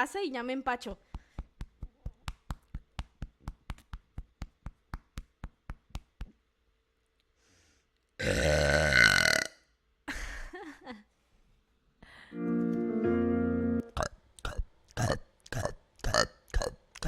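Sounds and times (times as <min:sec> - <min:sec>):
woman burping loudly: 0:08.2 - 0:09.6, 0:14.0 - 0:16.8.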